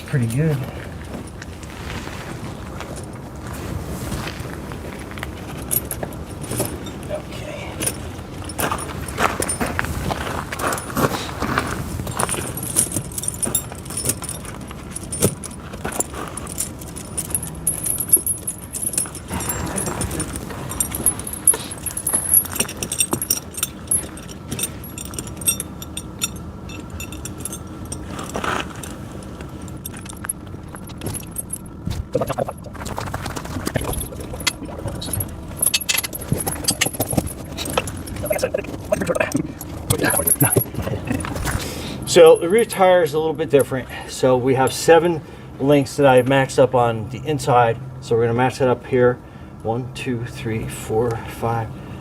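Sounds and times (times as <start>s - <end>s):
snow chain links rattling: 5.3s - 45.2s.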